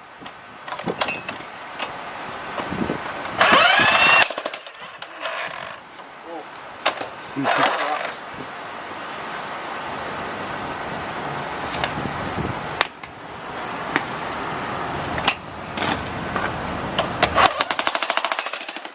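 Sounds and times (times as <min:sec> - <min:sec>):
distant traffic noise: 0:00.0 - 0:18.8
sharp clicks and knocks: 0:00.2 - 0:03.6, 0:06.8 - 0:07.9.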